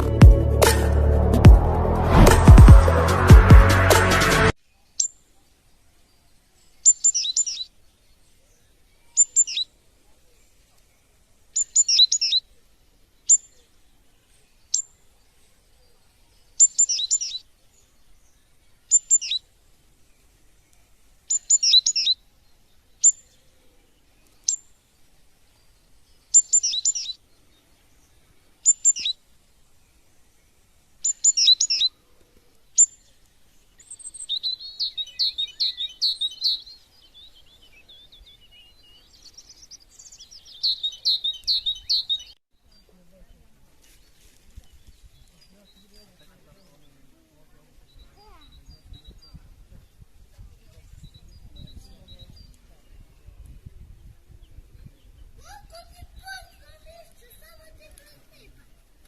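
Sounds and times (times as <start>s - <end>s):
songbird chirping: 0.0s - 59.0s
bird twittering: 6.8s - 7.7s, 9.1s - 9.7s, 11.6s - 12.5s, 16.6s - 17.4s, 18.9s - 19.4s, 21.3s - 22.2s, 26.3s - 27.2s, 28.6s - 29.2s, 31.0s - 32.0s, 33.8s - 42.9s.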